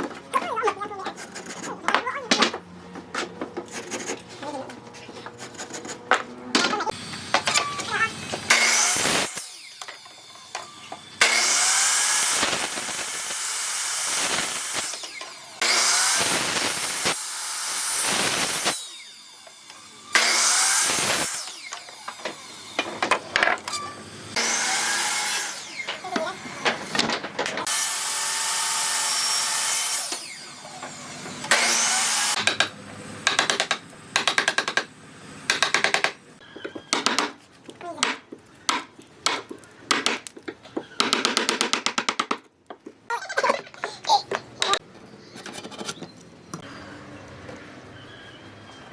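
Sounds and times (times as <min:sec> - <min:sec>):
power tool working wood: 0:06.9 - 0:27.0, 0:27.6 - 0:32.6.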